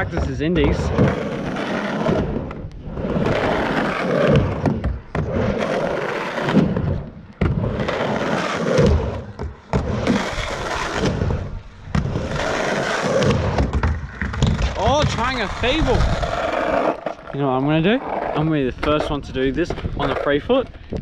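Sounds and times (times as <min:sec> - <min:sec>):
skateboard wheels rolling: 0:00.0 - 0:21.0
skateboard landing thuds: 0:03.2 - 0:12.5, 0:13.1 - 0:15.3.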